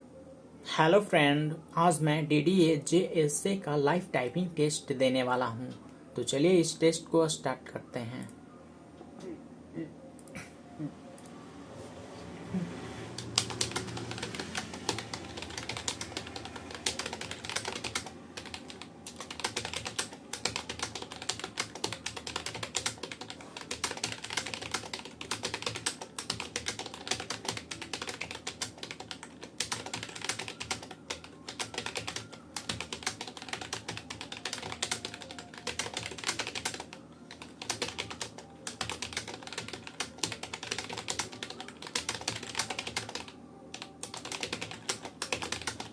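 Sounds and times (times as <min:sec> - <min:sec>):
keyboard typing clicks: 0:13.2 - 0:45.9.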